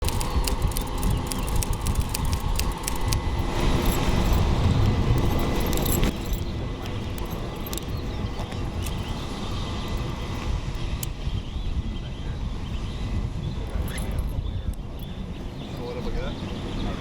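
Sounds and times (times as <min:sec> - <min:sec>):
metal gear jangling: 0:00.0 - 0:11.2, 0:13.6 - 0:15.9.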